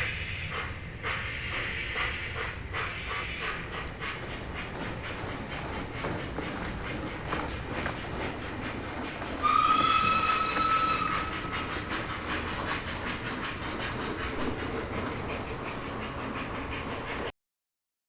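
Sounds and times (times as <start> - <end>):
locomotive chuffing: 0.0 - 17.3
steam locomotive whistle: 9.4 - 12.5.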